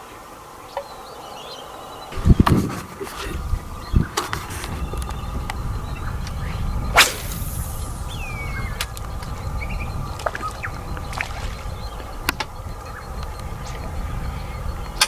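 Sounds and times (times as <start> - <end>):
wind rumbling on microphone: 2.1 - 15.0
short falling whistle: 4.8 - 8.9
loud sharp swish: 7.0 - 8.0.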